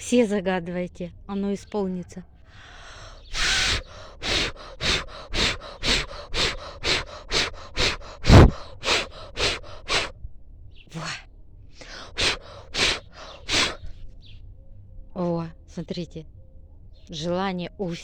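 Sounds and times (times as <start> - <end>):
puffs of breath blowing: 2.5 - 10.2, 11.8 - 14.0.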